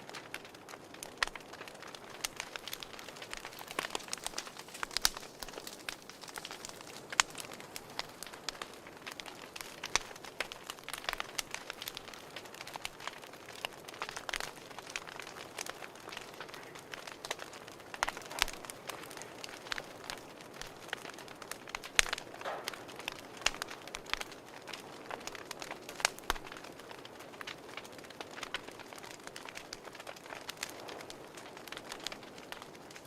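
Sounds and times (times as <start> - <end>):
wood fire crackling: 0.0 - 33.0.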